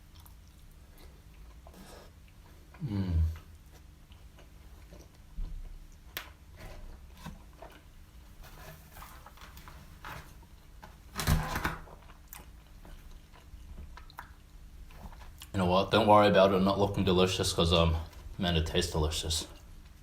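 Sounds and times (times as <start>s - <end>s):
close-up chewing food: 0.0s - 11.1s, 11.8s - 15.6s.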